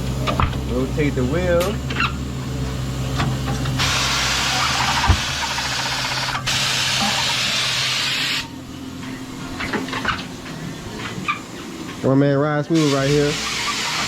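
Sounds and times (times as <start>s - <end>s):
machine motor hum: 0.0s - 12.1s
compressed air hiss: 3.8s - 8.5s, 12.7s - 14.0s.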